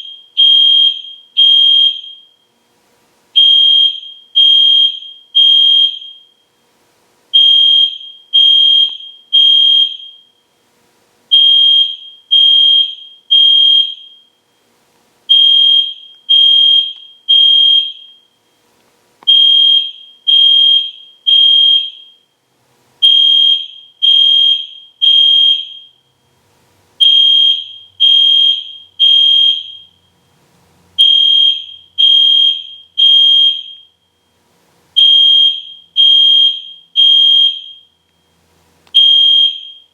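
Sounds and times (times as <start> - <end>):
fire alarm horn beeping: 0.0 - 2.5, 3.4 - 6.5, 7.3 - 10.4, 11.3 - 14.4, 15.3 - 18.4, 19.3 - 22.3, 23.0 - 26.0, 27.0 - 30.2, 31.0 - 34.3, 35.0 - 38.2, 39.0 - 39.9.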